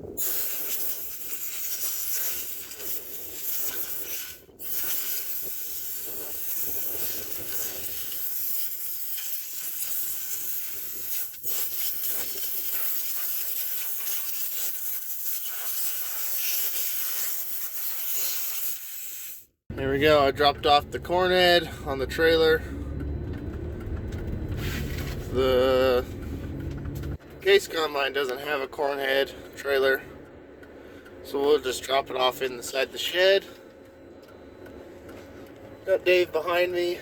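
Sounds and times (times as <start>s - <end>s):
air blow gun hissing: 0.2s - 19.5s.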